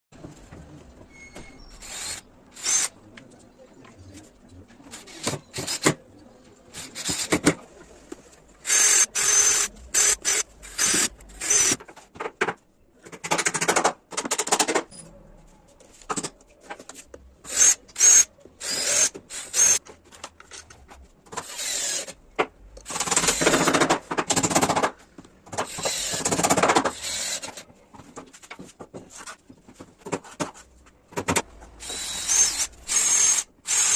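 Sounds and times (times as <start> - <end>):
power tools cutting wood: 31.8 - 33.9.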